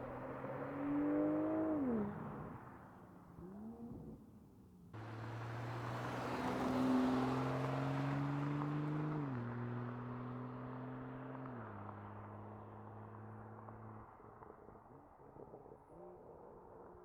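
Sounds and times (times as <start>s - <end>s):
car engine accelerating past: 5.0s - 17.0s.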